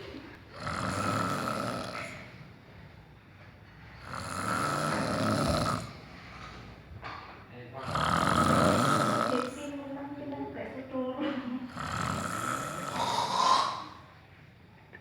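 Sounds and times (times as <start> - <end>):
person snoring rasping: 0.5 - 2.4, 4.0 - 6.1, 7.8 - 9.6, 11.7 - 14.1.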